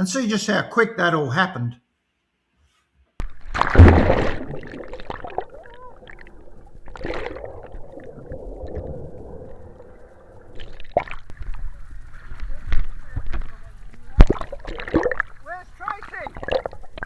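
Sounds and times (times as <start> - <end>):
water rushing and splashing: 3.2 - 17.0
boat engine drone: 7.8 - 14.2.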